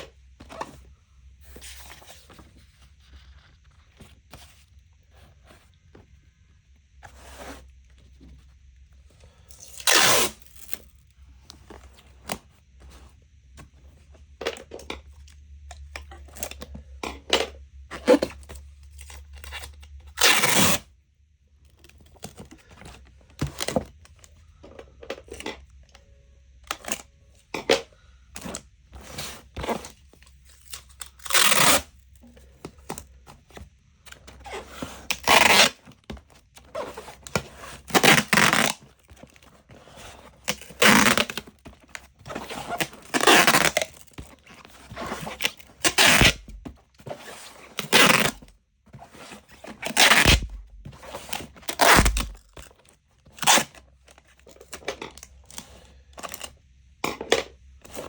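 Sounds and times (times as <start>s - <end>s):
tearing and crinkling scrapes: 1.6s - 4.6s, 9.5s - 11.0s, 17.9s - 20.8s, 28.4s - 33.0s, 34.1s - 58.0s.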